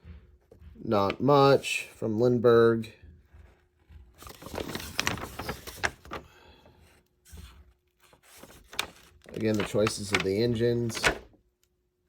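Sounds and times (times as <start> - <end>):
paper rustling and crinkling: 3.5 - 11.4.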